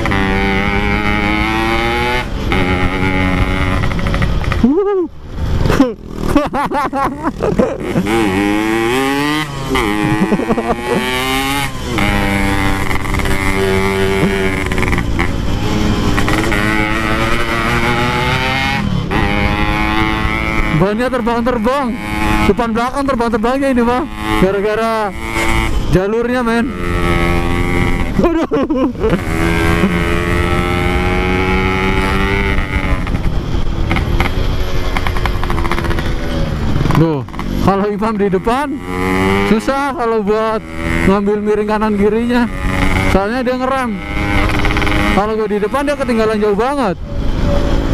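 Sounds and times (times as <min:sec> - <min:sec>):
two-stroke motorcycle engine running: 0:00.0 - 0:47.9.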